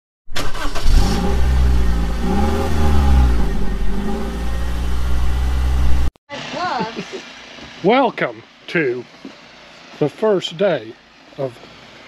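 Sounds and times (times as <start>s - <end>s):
vehicle engine revving: 0.4s - 6.1s.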